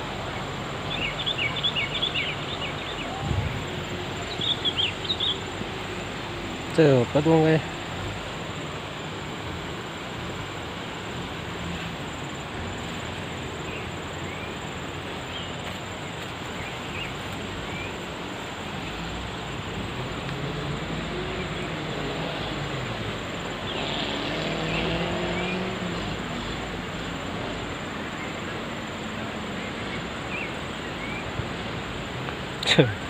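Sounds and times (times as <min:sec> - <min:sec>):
steady rushing noise: 0:00.0 - 0:33.0.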